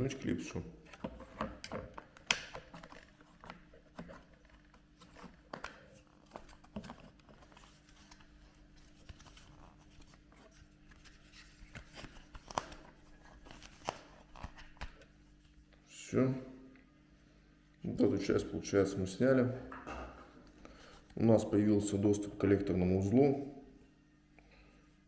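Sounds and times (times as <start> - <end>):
faint steady hum: 0.0 - 25.0.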